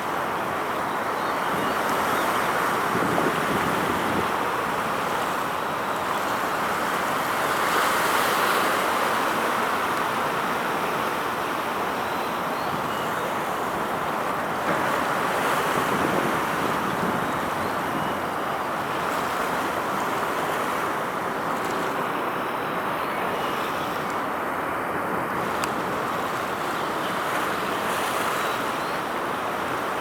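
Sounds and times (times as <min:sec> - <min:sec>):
sea water: 0:00.0 - 0:30.0
rushing wind: 0:01.5 - 0:05.6, 0:14.7 - 0:18.5
wind buffeting microphone: 0:02.7 - 0:05.0, 0:14.7 - 0:18.4.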